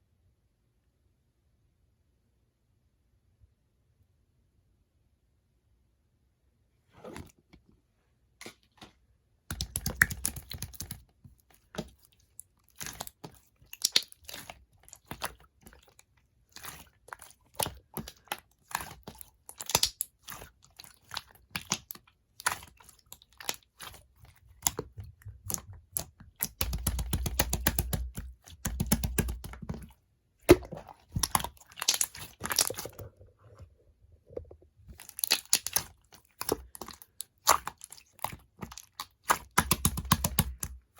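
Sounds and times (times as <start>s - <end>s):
slime crackling and squishing: 9.5s - 33.4s, 34.9s - 40.9s.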